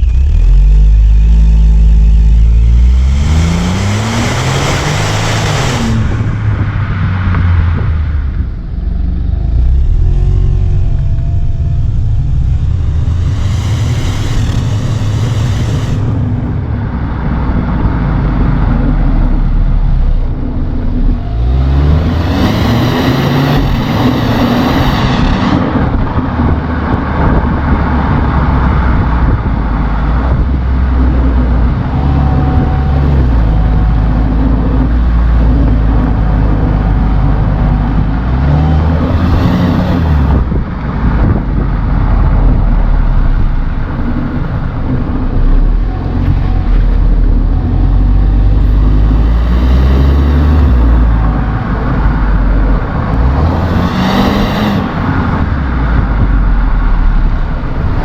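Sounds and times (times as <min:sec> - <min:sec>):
car engine revving: 0:00.0 - 0:58.0
rushing hiss: 0:12.1 - 0:16.5.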